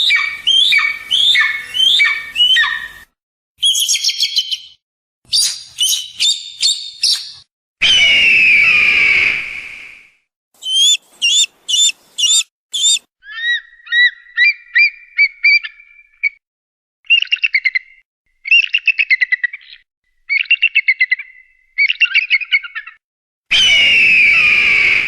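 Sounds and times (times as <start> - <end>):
bird of prey calling: 0.0 - 3.0, 10.6 - 16.4.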